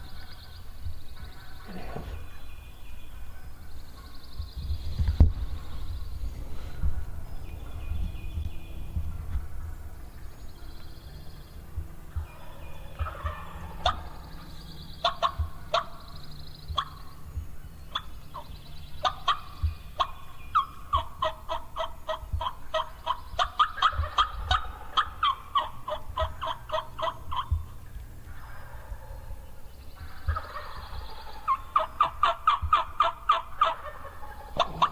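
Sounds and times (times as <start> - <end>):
songbird trills: 0.0 - 34.9
turkey gobbling: 9.3 - 34.9.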